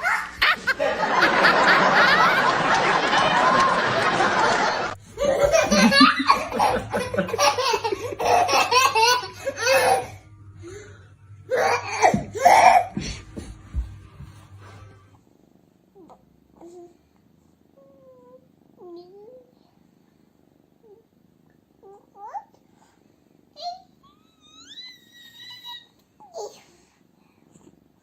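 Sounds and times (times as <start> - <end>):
people laughing heartily: 0.0 - 10.2.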